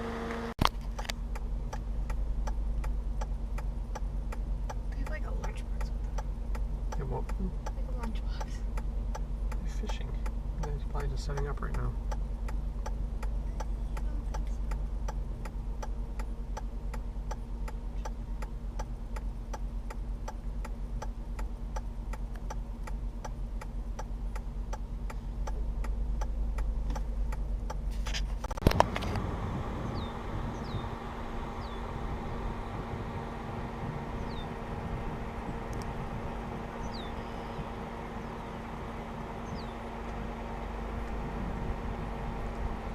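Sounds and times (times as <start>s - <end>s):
low vehicle hum: 0.0s - 42.9s
outdoor ambience: 0.0s - 42.9s
even ticking: 0.8s - 27.9s.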